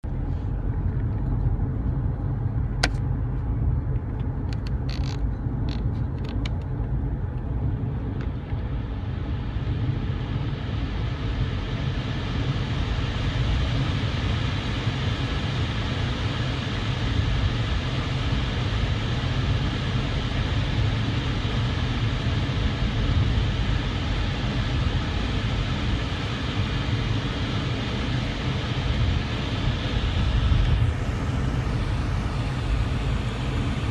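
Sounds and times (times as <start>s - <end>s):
air conditioning blower hissing: 0.0s - 33.9s
low rumble of vehicle: 0.0s - 33.9s.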